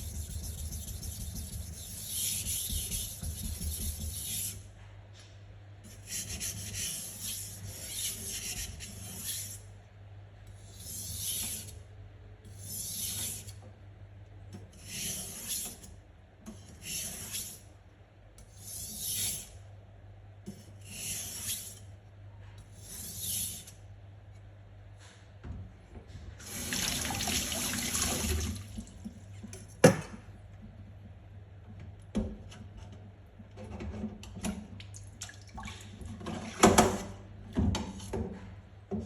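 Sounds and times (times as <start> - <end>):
knife scraping on whetstone: 0.0 - 4.6, 5.9 - 9.6, 12.5 - 13.6, 14.8 - 15.9, 16.7 - 17.6, 18.4 - 19.5, 20.6 - 21.9, 22.7 - 23.8.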